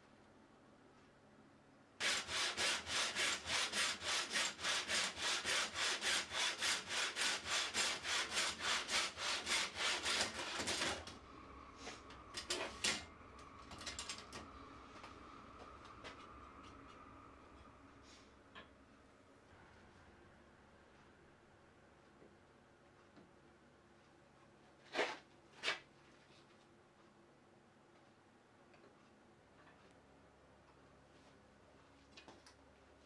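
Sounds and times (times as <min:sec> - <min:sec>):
hand saw cutting wood: 0:02.0 - 0:11.1.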